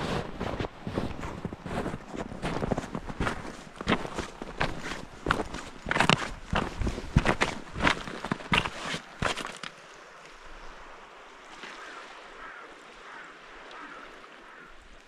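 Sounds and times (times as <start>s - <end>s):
footsteps on shore: 0.0s - 10.6s
rushing water: 0.0s - 15.0s
wind: 0.0s - 15.0s.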